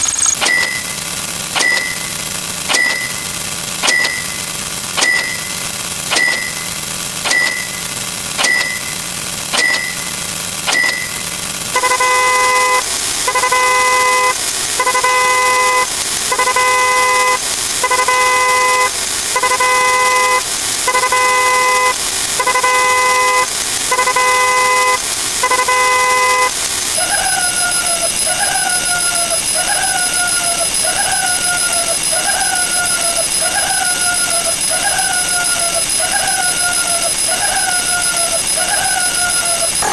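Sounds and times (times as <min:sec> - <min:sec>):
electronic alarm chirp falling: 0:00.0 - 0:01.0, 0:01.6 - 0:11.3
short click and beep: 0:00.0 - 0:11.3
car horn honking: 0:11.8 - 0:26.6.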